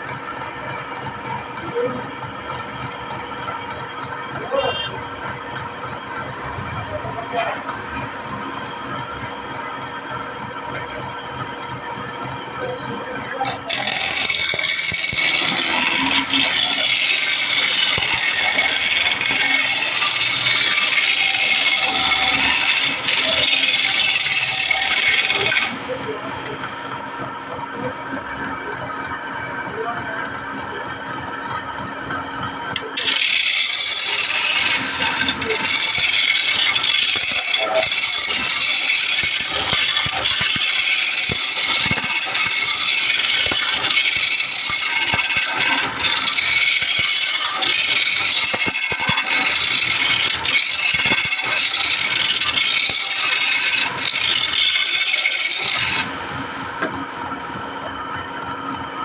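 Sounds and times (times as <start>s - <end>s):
wood scraping with abrasive tool: 11.7s - 26.6s, 32.2s - 58.2s.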